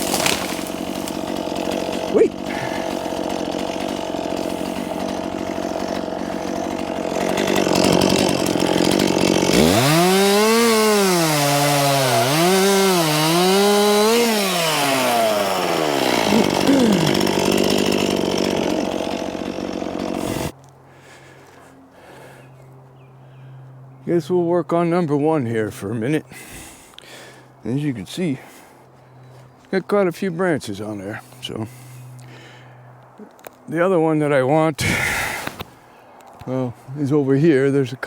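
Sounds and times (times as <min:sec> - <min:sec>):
chainsaw cutting wood: 0:00.0 - 0:20.6, 0:34.8 - 0:35.8.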